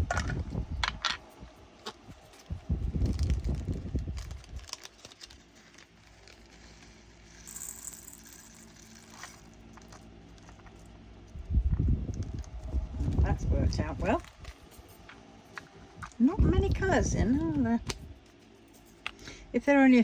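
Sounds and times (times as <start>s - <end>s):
faint steady hum: 0.0s - 20.0s
small plastic pieces rattling: 2.3s - 10.8s.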